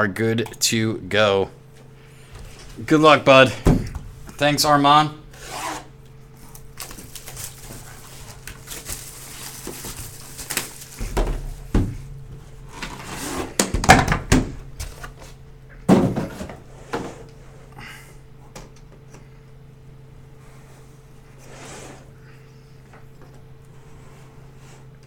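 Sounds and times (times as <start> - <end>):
steady low hum: 0.0 - 25.0
packaging rustling and knocks: 6.8 - 12.2.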